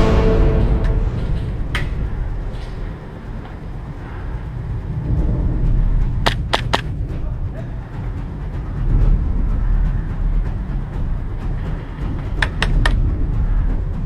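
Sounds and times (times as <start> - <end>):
low wind: 0.0 - 14.0
sharp cracks: 6.2 - 6.9.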